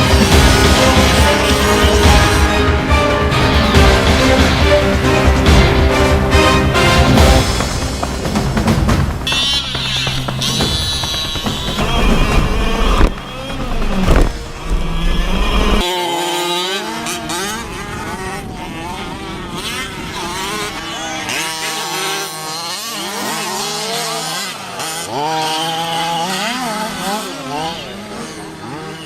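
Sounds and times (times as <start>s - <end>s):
radio-controlled car engines buzzing: 9.3s - 29.0s.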